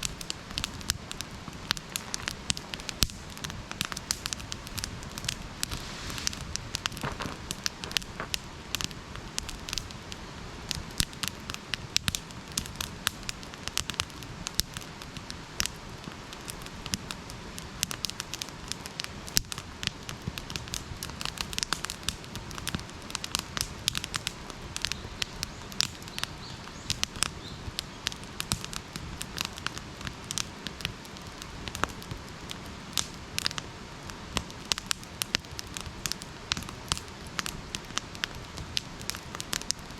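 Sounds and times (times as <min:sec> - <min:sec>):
fire hissing: 0:00.0 - 0:11.3
campfire crackling and popping: 0:00.0 - 0:39.9.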